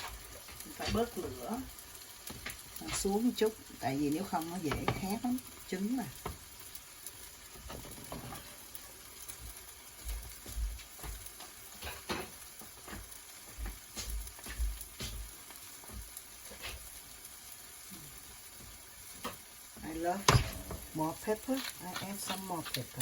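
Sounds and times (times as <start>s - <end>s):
food sizzling in a pan: 0.0s - 23.0s
utensil scraping a pan: 20.2s - 23.0s.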